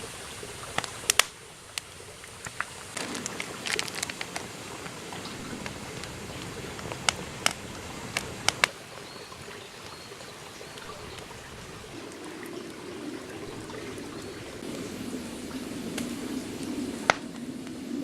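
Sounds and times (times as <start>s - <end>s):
wood fire crackling and popping: 0.7s - 8.8s, 15.9s - 17.8s.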